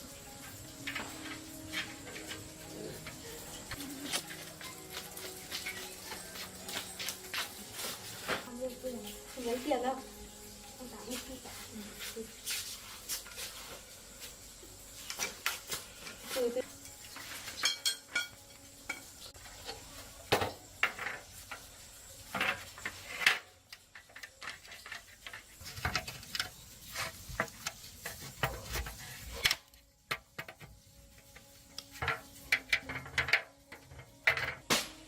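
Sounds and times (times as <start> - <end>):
metal tools clinking: 17.4 - 19.0.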